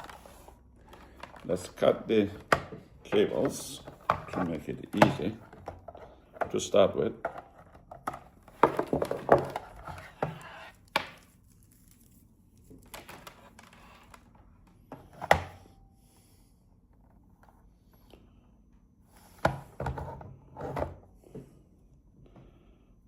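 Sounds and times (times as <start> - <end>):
rustling handling noise: 0.0 - 14.5.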